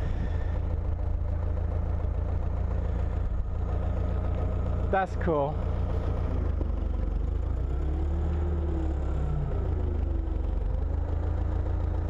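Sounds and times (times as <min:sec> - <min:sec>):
low machine hum: 0:00.0 - 0:07.0.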